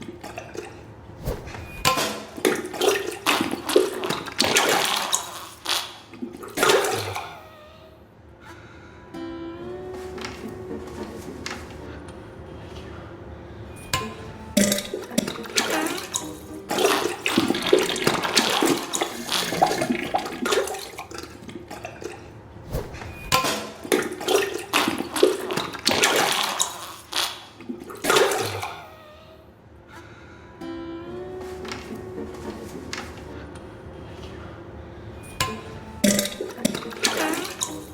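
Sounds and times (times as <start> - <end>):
wet splatters into toilet water: 1.9 - 7.2, 14.0 - 22.2, 23.4 - 28.7, 35.4 - 37.9.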